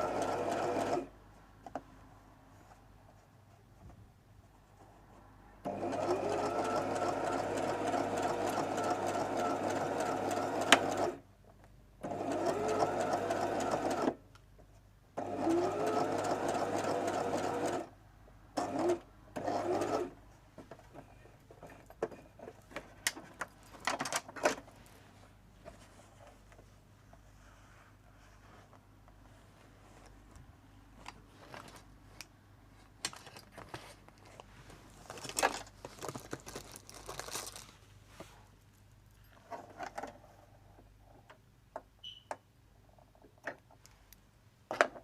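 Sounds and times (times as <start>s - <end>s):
sewing machine stitching: 0.0s - 1.1s, 5.6s - 11.2s, 12.0s - 14.2s, 15.2s - 17.9s, 18.6s - 20.2s.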